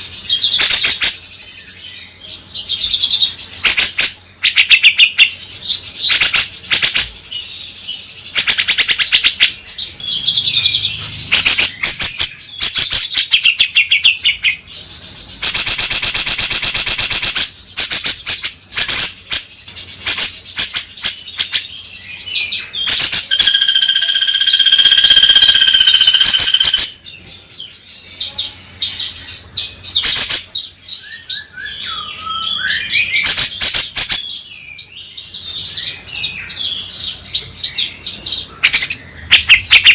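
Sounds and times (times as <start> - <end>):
bulbul calling: 22.8 - 27.0.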